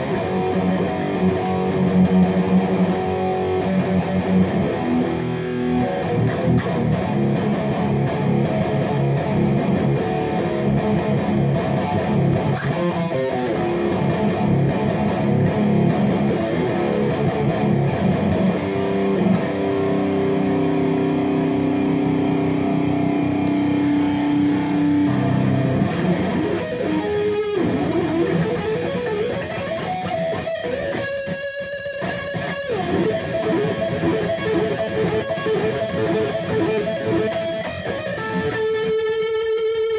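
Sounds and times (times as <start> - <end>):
distorted electric guitar riffs: 0.0 - 39.9.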